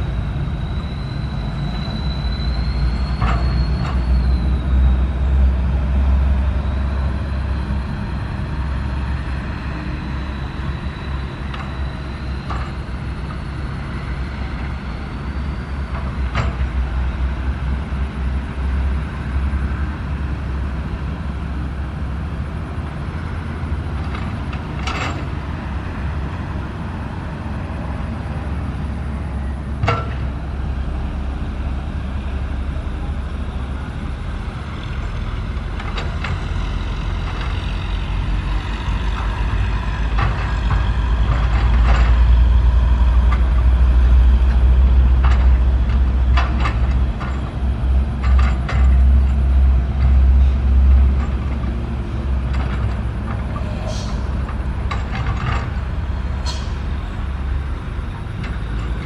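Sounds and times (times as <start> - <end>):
excavator diesel engine droning: 0.0 - 59.0
metallic clanks and knocks: 24.0 - 25.4, 29.8 - 30.3, 48.2 - 59.0.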